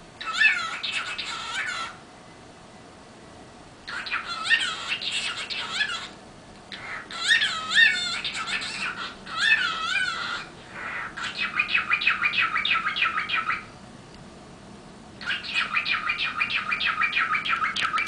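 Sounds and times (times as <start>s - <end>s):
songbird warbling and trilling: 0.2s - 2.0s, 3.9s - 13.7s, 15.2s - 18.0s.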